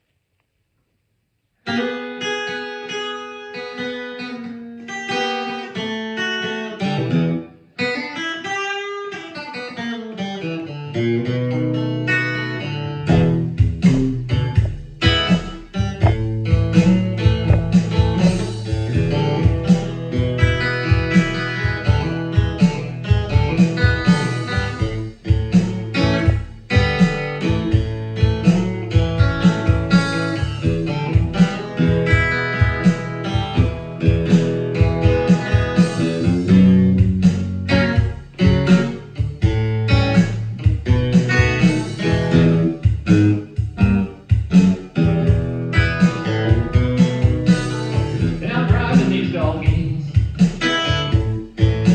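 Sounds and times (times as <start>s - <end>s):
bluesy guitar: 1.6s - 51.9s
low bass line: 13.1s - 20.3s, 36.1s - 51.9s
regular beat: 13.1s - 51.9s.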